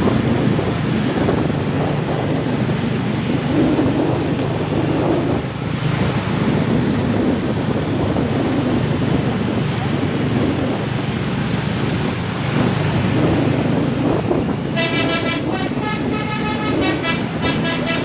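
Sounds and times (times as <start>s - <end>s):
loud roadside traffic rumble: 0.0s - 18.0s
wind buffeting microphone: 0.0s - 18.0s.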